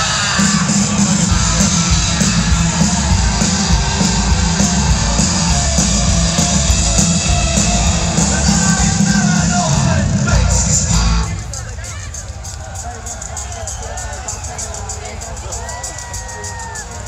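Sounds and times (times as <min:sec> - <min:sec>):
live rock band with guitars: 0:00.0 - 0:12.2.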